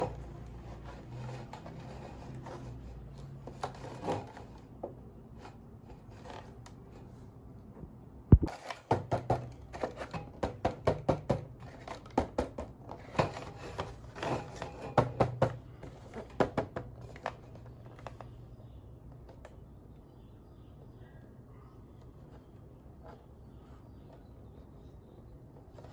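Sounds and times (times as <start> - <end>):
sharp knock: 8.3 - 8.5.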